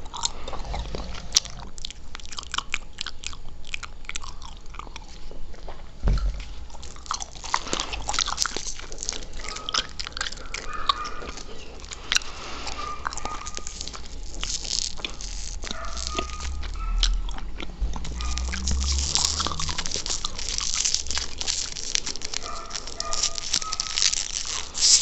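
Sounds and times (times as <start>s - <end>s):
low thump: 6.0s - 6.4s, 16.5s - 20.0s.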